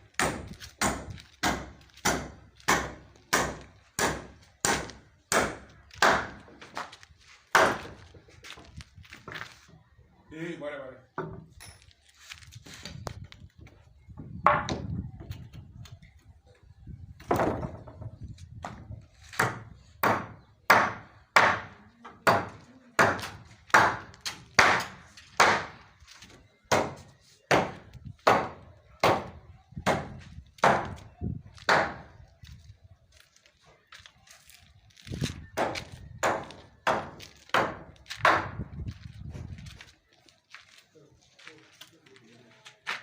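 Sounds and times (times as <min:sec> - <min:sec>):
hammer striking timber: 0:00.2 - 0:06.8, 0:07.5 - 0:08.0, 0:19.4 - 0:25.8, 0:26.7 - 0:32.1, 0:35.6 - 0:38.6.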